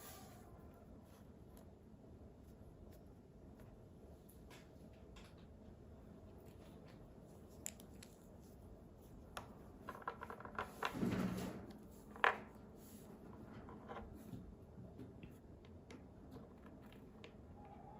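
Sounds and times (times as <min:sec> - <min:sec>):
light clicks and taps: 0:06.6 - 0:08.3.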